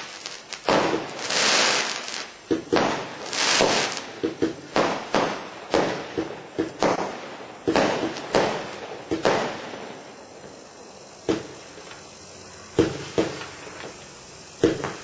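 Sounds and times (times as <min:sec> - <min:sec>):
firework cake bangs: 0:00.0 - 0:10.0, 0:11.2 - 0:11.7, 0:12.7 - 0:14.0, 0:14.6 - 0:15.0
hissing crackle: 0:00.0 - 0:15.0.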